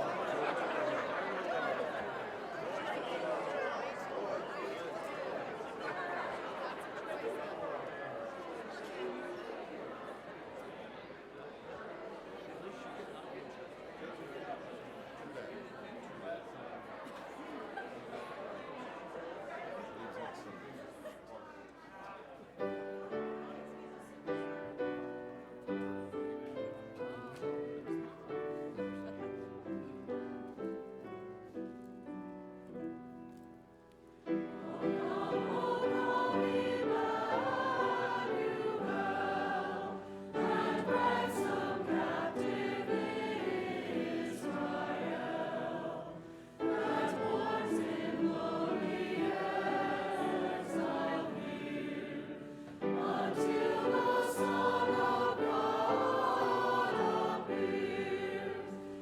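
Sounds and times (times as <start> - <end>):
choir singing a hymn: 0.0 - 8.1, 22.6 - 33.0, 34.2 - 59.0.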